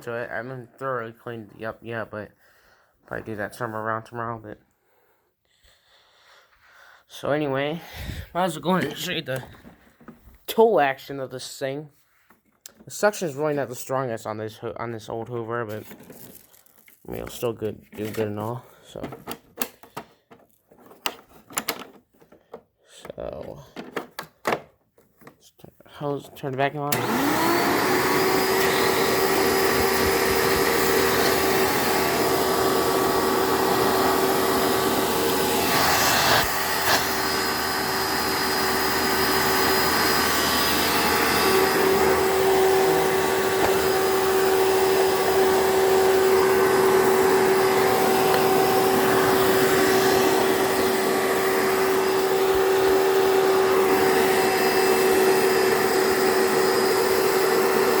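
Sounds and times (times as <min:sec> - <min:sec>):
vacuum cleaner motor whine: 0:26.9 - 0:58.0.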